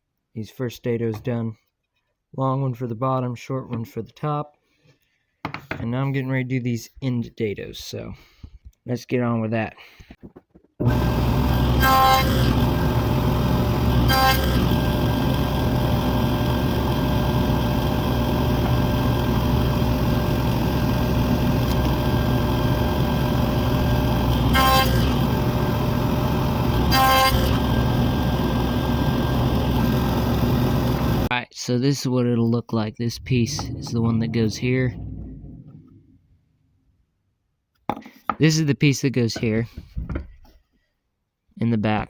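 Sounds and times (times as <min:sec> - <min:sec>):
blade ringing cutting wood: 0:10.8 - 0:31.3
woodworking power tool running: 0:10.8 - 0:31.3.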